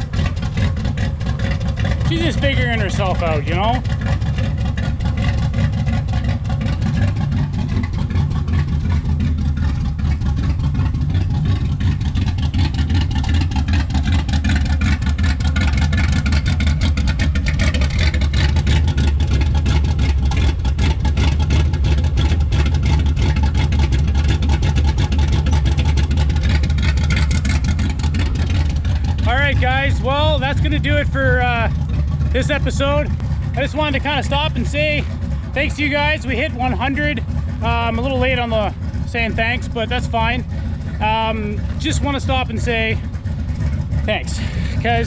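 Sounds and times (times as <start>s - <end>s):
car engine idling: 0.0s - 45.0s.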